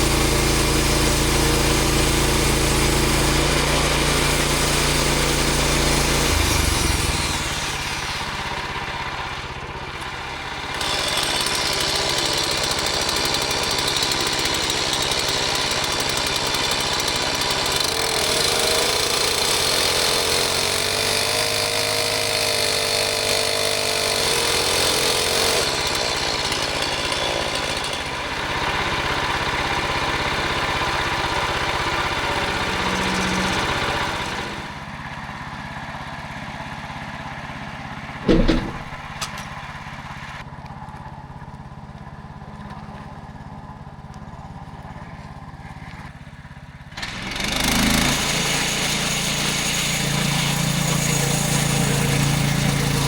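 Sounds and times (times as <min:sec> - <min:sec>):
sawmill engine under load: 0:00.0 - 0:40.6, 0:44.4 - 0:53.0
sharp knock: 0:38.3 - 0:39.6.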